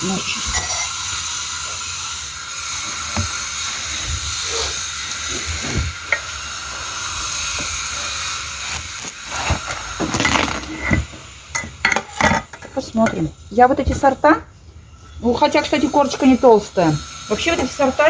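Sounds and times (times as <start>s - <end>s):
water hissing: 0.0s - 11.5s, 15.2s - 18.0s.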